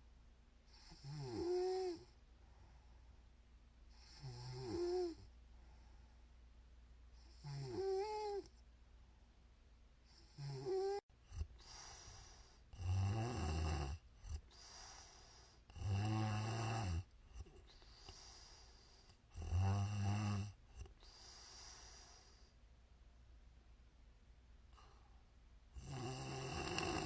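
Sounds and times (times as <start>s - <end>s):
woman snoring: 0.7s - 2.2s, 4.0s - 5.3s, 7.3s - 8.5s, 10.2s - 18.7s, 19.3s - 22.3s, 25.8s - 27.0s
soft breath out: 11.5s - 12.7s, 14.4s - 15.7s, 17.4s - 19.3s, 20.8s - 22.6s.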